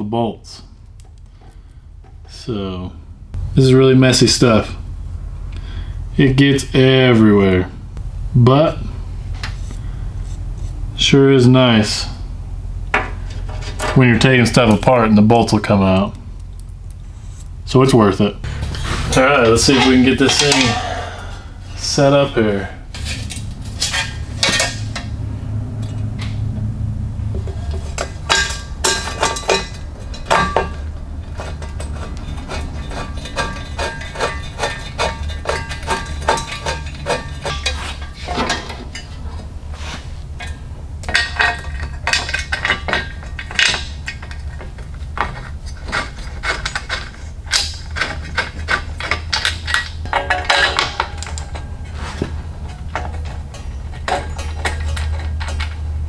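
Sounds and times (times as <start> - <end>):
steady low hum: 0.0 - 56.0
metal bolts and tools clinking: 13.0 - 17.6, 19.0 - 20.9, 23.0 - 25.2, 27.5 - 39.5, 40.4 - 56.0.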